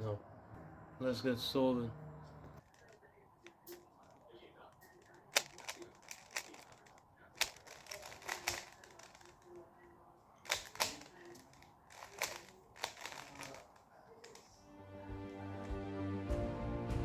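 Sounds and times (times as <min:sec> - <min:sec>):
puzzle cube clicking: 0:02.7 - 0:04.1, 0:04.8 - 0:09.6, 0:10.5 - 0:14.6.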